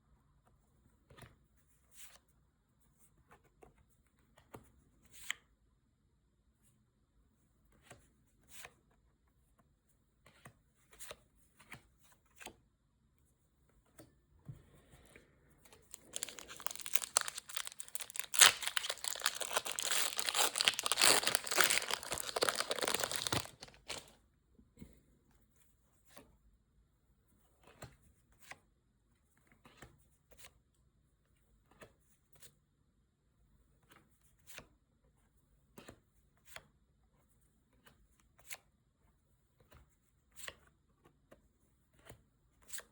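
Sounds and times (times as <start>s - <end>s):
packaging tearing and crinkling: 15.9s - 24.1s.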